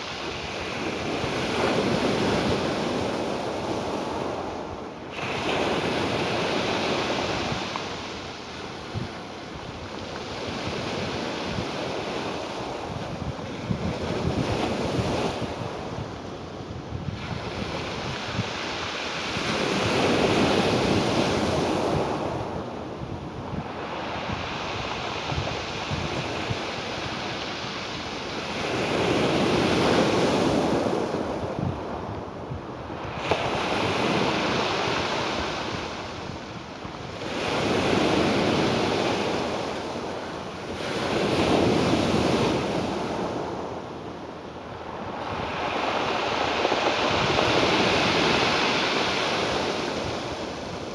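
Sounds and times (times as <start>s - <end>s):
ocean waves washing in: 32.4s - 50.9s.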